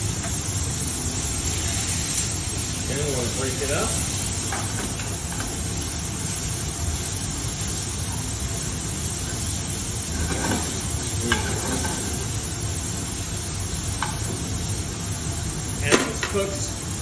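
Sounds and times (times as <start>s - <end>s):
meat sizzling in a pan: 0.0s - 17.0s
utensil tapping and scraping pan: 10.2s - 12.2s.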